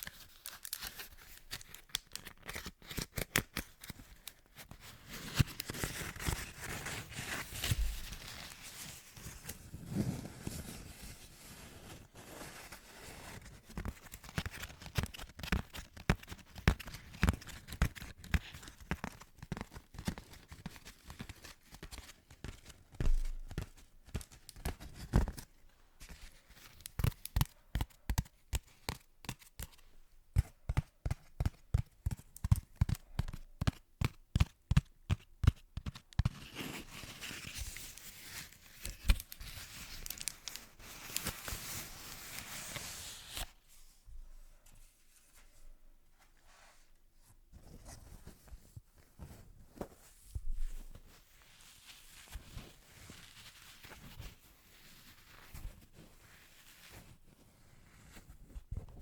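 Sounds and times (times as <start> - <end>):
crisp clicks and crackles: 0.0 - 4.4, 37.3 - 41.6
crinkly rustle: 36.5 - 43.6.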